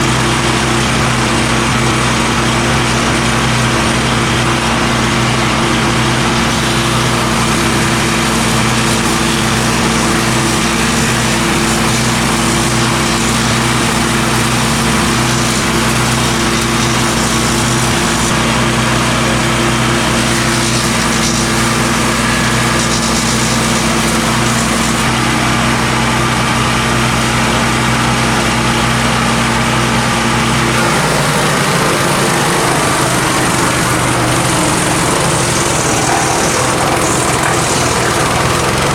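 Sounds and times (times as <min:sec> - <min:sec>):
wood chipper running: 0:00.0 - 0:38.9.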